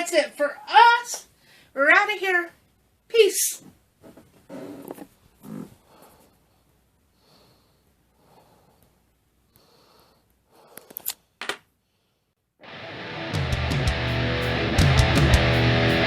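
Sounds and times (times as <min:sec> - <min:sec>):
faint breath-like sounds: 0:05.4 - 0:11.1
music: 0:12.6 - 0:16.0.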